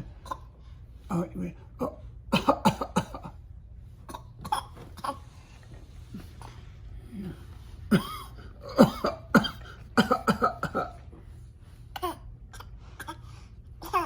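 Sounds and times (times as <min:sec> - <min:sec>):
person coughing: 0:01.8 - 0:03.4, 0:04.1 - 0:05.3, 0:07.2 - 0:11.1.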